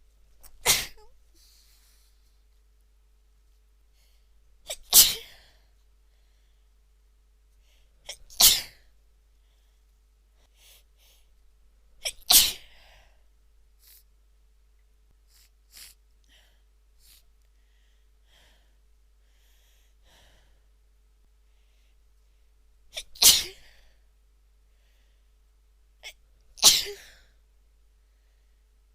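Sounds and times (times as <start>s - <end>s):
woman sneezing: 0.5s - 1.1s, 4.7s - 5.4s, 8.1s - 8.8s, 12.0s - 12.7s, 23.0s - 23.7s, 26.6s - 27.2s
faint breathing: 1.3s - 2.4s, 5.4s - 6.8s, 9.3s - 11.4s, 15.2s - 20.8s, 21.4s - 22.6s, 23.6s - 25.4s, 28.0s - 28.7s.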